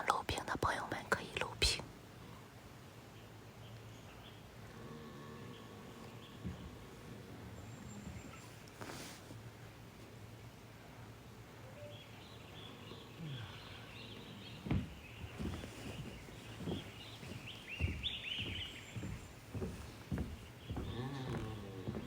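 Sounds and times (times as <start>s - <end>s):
outdoor background noise: 0.0s - 22.0s
bear snoring: 4.6s - 8.0s, 20.8s - 22.0s
birds chirping: 11.6s - 22.0s.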